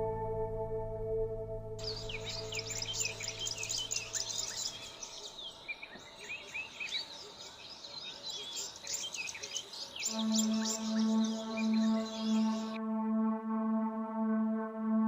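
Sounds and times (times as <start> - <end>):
steady pitched tone: 0.0 - 4.3
low musical drone: 0.0 - 5.2, 10.1 - 15.0
chorus of birds chirping: 1.8 - 12.8.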